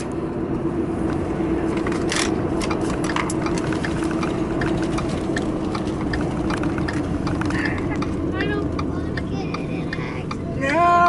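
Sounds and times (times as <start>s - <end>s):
truck engine and road rumble: 0.0s - 11.0s
gravel ticks and clicks: 2.1s - 10.8s.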